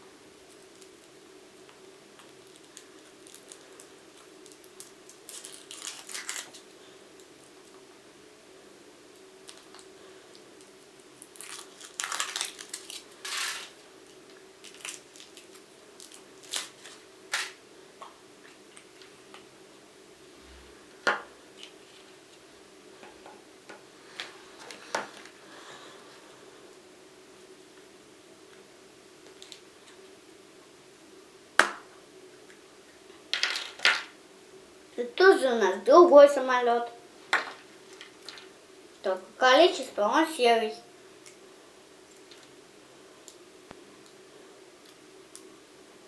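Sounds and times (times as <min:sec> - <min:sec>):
faint steady hum: 0:00.0 - 0:46.0
foil wrapper crinkling: 0:02.2 - 0:07.8, 0:09.4 - 0:09.9, 0:10.6 - 0:17.6.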